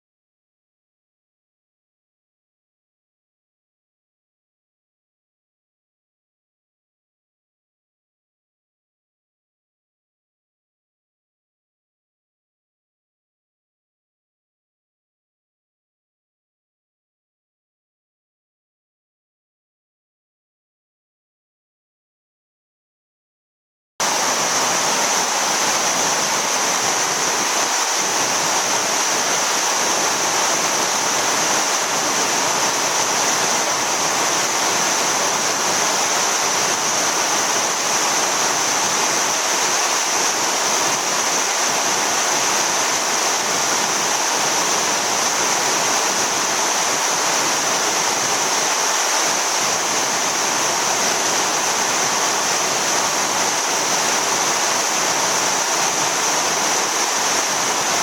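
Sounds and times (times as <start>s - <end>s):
waterfall rushing: 24.0s - 58.0s.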